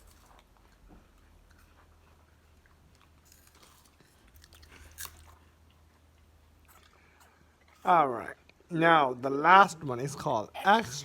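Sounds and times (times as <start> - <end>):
crunching and chewing snacks: 0.0 - 8.7.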